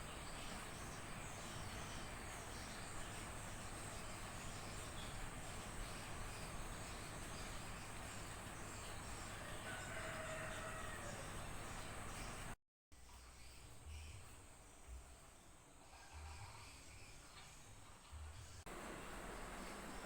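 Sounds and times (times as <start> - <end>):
insects droning: 0.0 - 12.6, 18.7 - 20.0.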